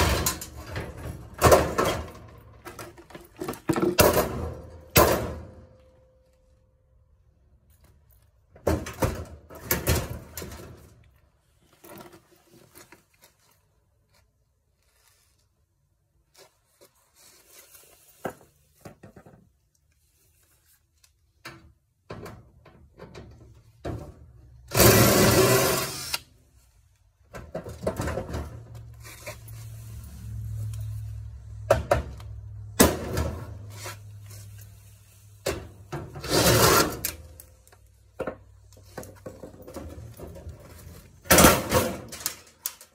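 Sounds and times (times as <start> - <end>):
tools knocking and scraping metal: 0.0 - 5.4.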